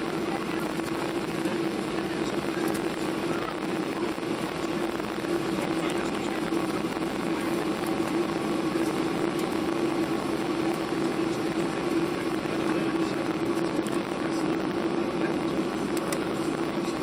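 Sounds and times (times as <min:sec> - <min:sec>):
airplane cabin engine drone: 0:00.0 - 0:17.0.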